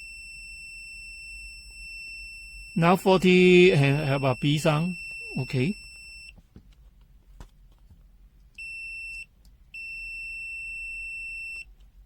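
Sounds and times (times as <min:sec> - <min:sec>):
multimeter beeping: 0:01.8 - 0:06.3, 0:08.6 - 0:11.7.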